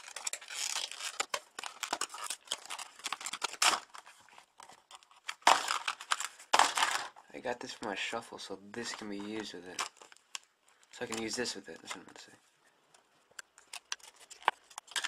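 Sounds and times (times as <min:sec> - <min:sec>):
packaging tearing: 0:00.0 - 0:07.1, 0:13.6 - 0:15.0
packaging crinkling and rustling: 0:00.0 - 0:08.2, 0:08.8 - 0:12.3, 0:13.4 - 0:15.0.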